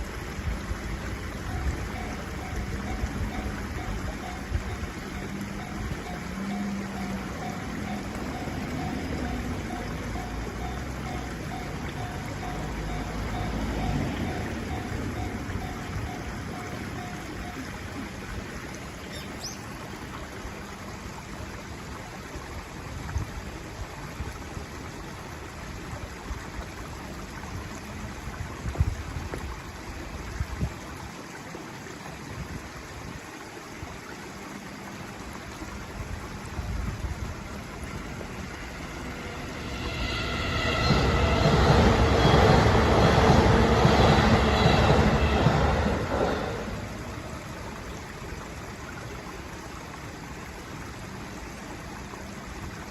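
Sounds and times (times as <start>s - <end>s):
electric train approaching: 0.0s - 18.0s, 37.2s - 48.0s
outdoor background noise: 0.0s - 52.9s
level crossing bell ringing: 1.5s - 17.6s.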